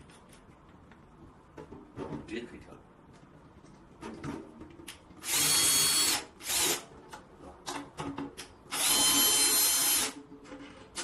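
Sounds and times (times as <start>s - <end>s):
electric drill whining: 5.2s - 6.8s, 8.7s - 10.2s.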